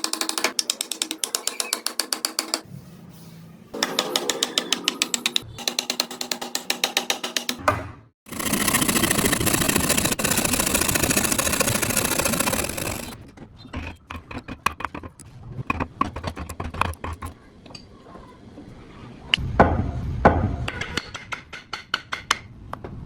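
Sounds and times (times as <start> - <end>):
electric power tool running: 8.3 - 13.2
knocks and clicks of wood handled: 13.8 - 17.3.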